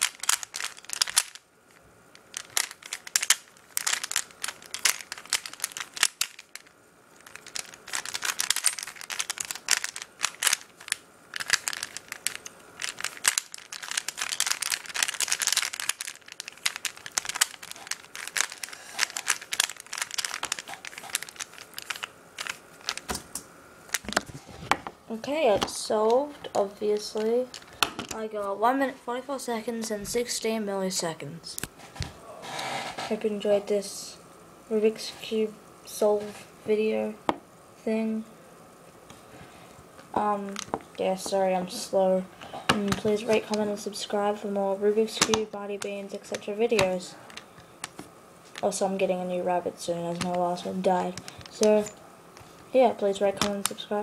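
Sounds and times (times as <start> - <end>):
puzzle cube clicking and scraping: 0.0 - 1.4, 2.3 - 6.6, 7.2 - 23.2, 42.8 - 43.8, 45.0 - 48.8, 50.0 - 53.9.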